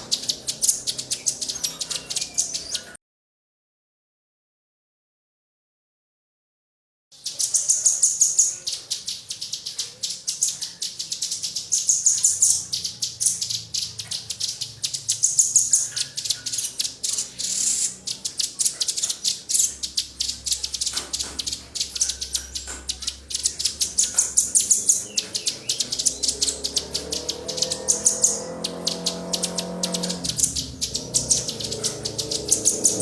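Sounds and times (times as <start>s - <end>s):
songbird chattering call: 0.0s - 3.0s, 7.2s - 33.0s.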